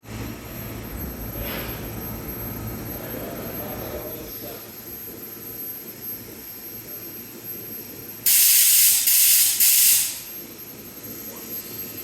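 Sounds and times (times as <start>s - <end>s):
air hiss from train car: 8.2s - 10.3s.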